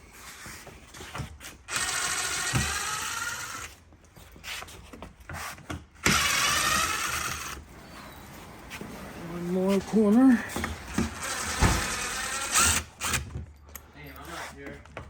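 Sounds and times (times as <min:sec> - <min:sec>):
cordless drill motor: 0:01.7 - 0:03.8, 0:06.0 - 0:07.7, 0:10.5 - 0:13.4.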